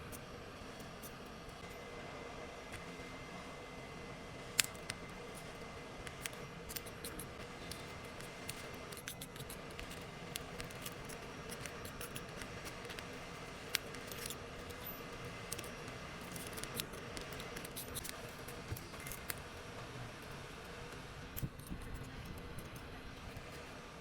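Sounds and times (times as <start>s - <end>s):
faint steady hum: 0.0s - 24.0s
hand tool clicks and scrapes: 4.6s - 19.5s, 21.3s - 23.6s.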